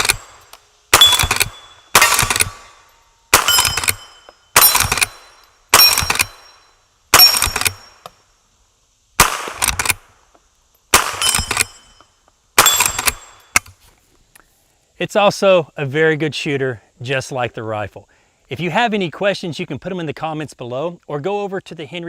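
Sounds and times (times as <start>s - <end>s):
rifle shots with ringing tail: 0.0s - 8.0s, 9.2s - 10.0s, 10.9s - 12.0s, 12.6s - 13.6s.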